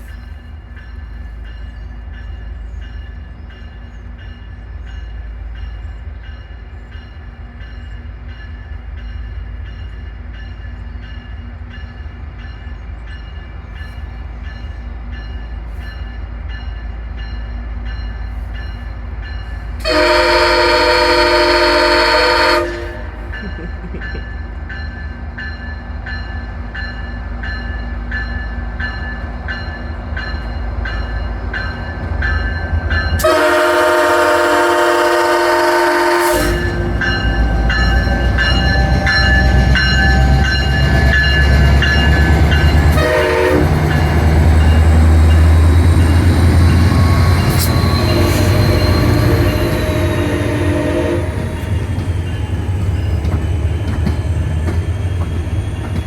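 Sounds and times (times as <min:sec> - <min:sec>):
diesel locomotive engine rumble: 0:00.0 - 0:56.0
train bell clanging: 0:00.0 - 0:56.0
train horn blasts: 0:19.8 - 0:23.4, 0:33.2 - 0:40.8, 0:42.8 - 0:44.8, 0:46.9 - 0:51.8.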